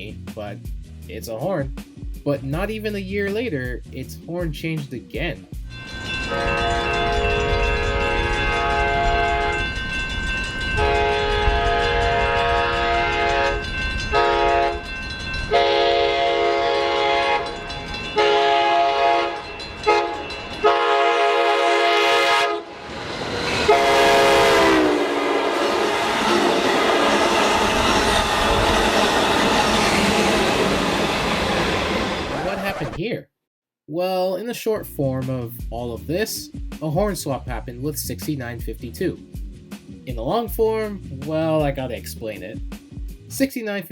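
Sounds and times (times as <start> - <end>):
low train rumble: 5.5 - 33.0
multi-chime train air horn: 5.7 - 22.8, 23.5 - 28.6.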